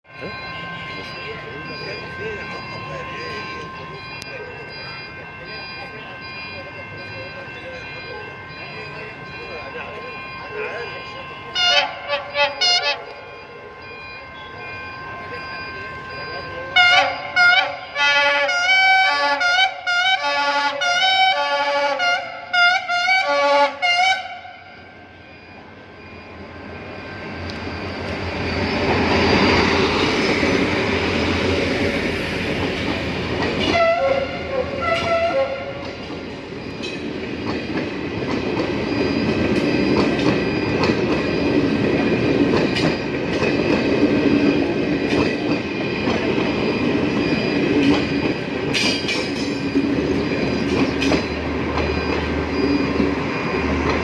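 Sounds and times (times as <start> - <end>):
train rumbling past: 0.1 - 54.0
locomotive horn blasts: 10.0 - 15.1, 16.7 - 25.1, 33.6 - 36.0.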